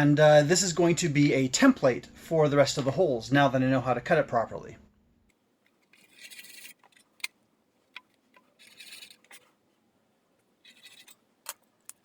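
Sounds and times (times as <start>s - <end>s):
marking tool scratching metal: 5.9s - 7.3s, 8.4s - 9.5s, 10.6s - 11.2s.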